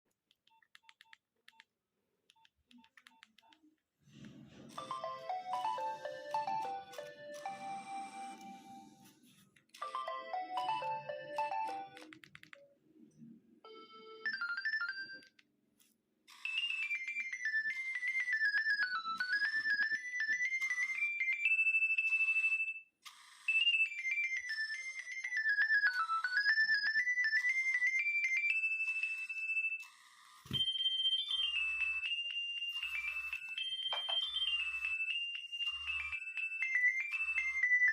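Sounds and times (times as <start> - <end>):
mobile phone ringtone melodies: 4.7 - 9.2, 9.8 - 12.2, 13.6 - 15.3, 16.3 - 37.9.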